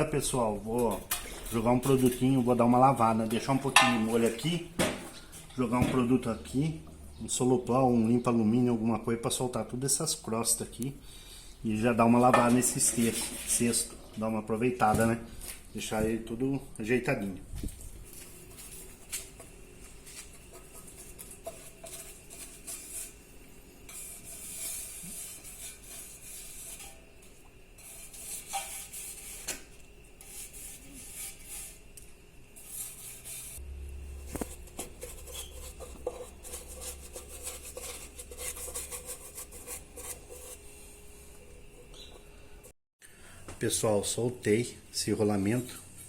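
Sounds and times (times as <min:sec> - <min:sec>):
low steady hum: 0:15.2 - 0:46.0
scrubbing on metal basket: 0:34.2 - 0:40.7.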